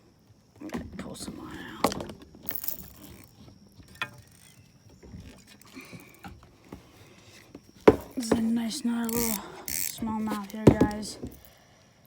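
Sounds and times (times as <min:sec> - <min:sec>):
fishing reel drag clicking: 0:09.0 - 0:10.6.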